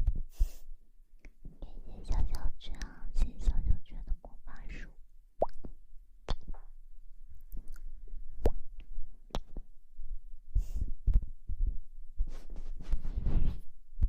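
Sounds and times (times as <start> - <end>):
brushing against microphone: 10.6 - 13.8.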